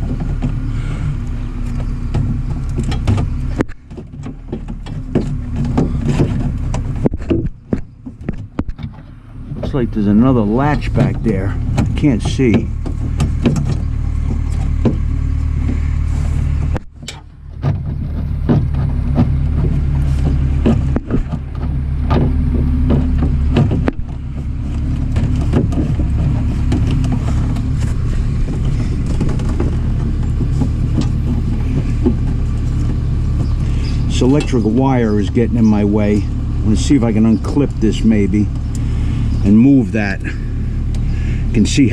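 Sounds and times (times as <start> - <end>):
clicks and knocks of car door parts: 0.0 - 10.2, 10.8 - 35.0
steady low hum: 0.0 - 41.9.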